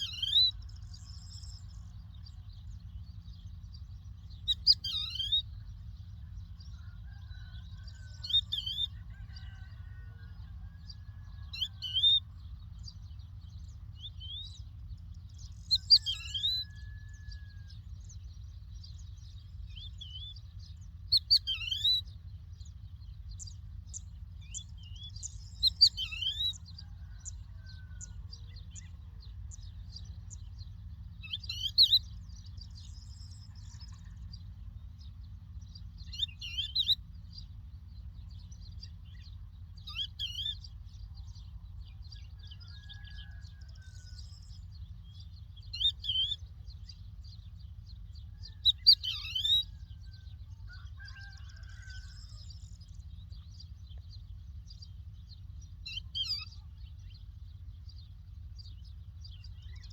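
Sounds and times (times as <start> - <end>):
lark chirping: 0.0 - 1.7, 3.4 - 5.6, 7.8 - 9.5, 15.4 - 17.6, 21.1 - 22.1, 23.4 - 27.4, 31.2 - 34.4, 35.8 - 37.5, 45.6 - 47.1, 48.3 - 50.2
faint bird chirps: 0.0 - 1.9, 2.6 - 9.6, 15.5 - 17.9
steady low rumble: 0.0 - 9.4, 10.3 - 42.7, 43.4 - 59.9.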